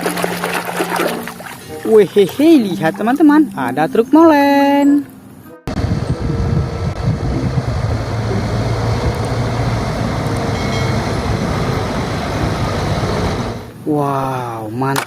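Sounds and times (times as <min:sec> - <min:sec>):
water spraying: 0:00.0 - 0:03.2
low hum: 0:05.7 - 0:13.8.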